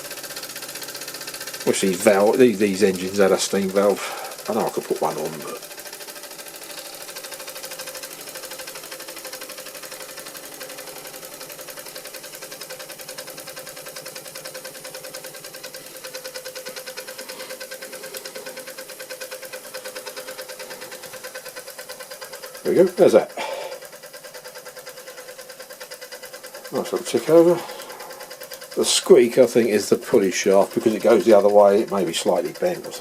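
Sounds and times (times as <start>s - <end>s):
toy steam engine ticking: 0.0s - 33.0s.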